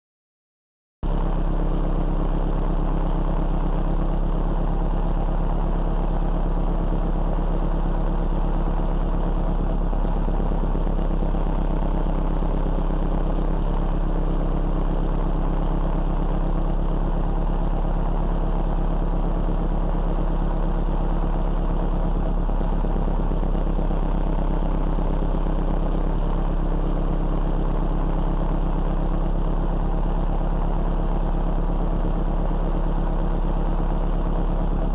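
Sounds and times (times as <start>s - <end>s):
car engine idling: 1.0s - 34.9s.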